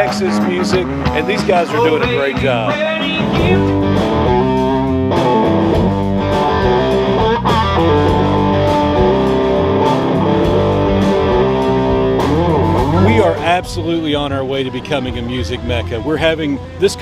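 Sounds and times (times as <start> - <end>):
band music with electric guitar: 0.0 - 17.0
bass guitar: 0.0 - 17.0.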